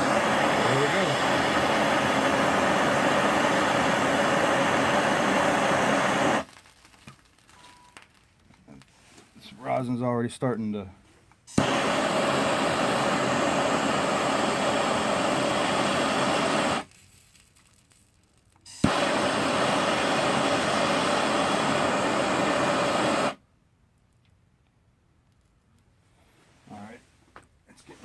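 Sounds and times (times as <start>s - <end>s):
gas torch hissing: 0.0s - 6.5s, 11.5s - 16.9s, 18.6s - 23.4s
torch igniter click: 0.0s - 6.5s, 11.5s - 16.9s, 18.7s - 23.4s.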